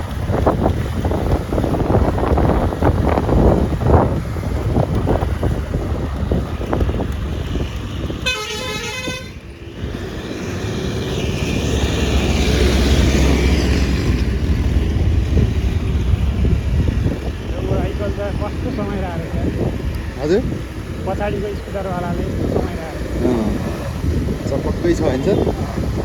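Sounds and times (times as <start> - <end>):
wind and road noise: 0.0 - 26.0
vehicle horn: 8.2 - 9.4.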